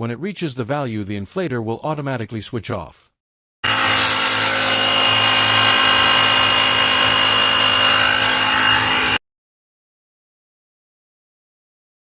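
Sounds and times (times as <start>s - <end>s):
air compressor running: 3.6s - 9.2s.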